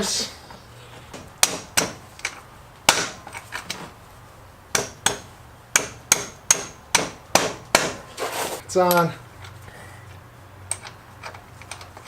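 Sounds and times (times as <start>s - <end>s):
sharp knocks on metal axle: 1.1s - 3.8s, 4.7s - 8.1s.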